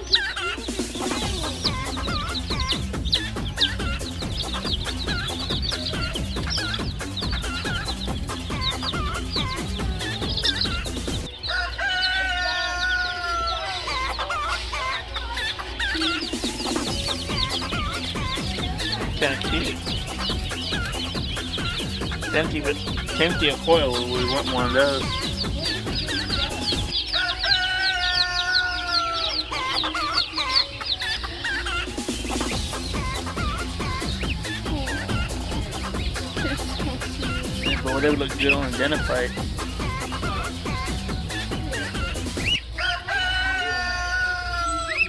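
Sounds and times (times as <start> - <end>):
birds cheeping: 0.0 - 45.0
chickens clucking: 0.0 - 45.0
long drawn-out bird call: 0.0 - 45.0
rooster crowing: 2.2 - 24.3, 25.0 - 34.4, 39.9 - 45.0.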